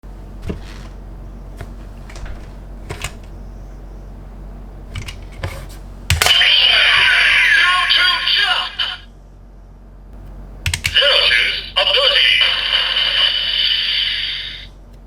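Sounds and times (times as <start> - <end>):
low steady hum: 0.0 - 15.0
plastic toy clicks and taps: 10.7 - 11.0.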